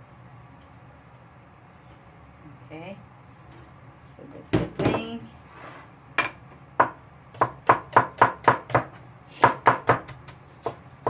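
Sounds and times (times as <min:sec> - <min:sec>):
knife chopping on cutting board: 0:06.8 - 0:10.8.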